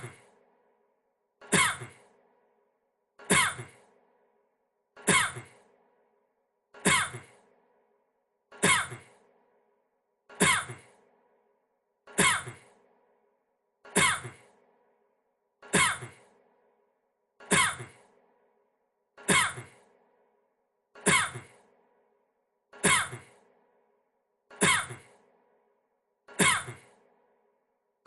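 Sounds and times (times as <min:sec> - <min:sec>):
man coughing: 0:13.9 - 0:14.4, 0:19.2 - 0:19.8, 0:22.8 - 0:23.4, 0:26.4 - 0:26.9.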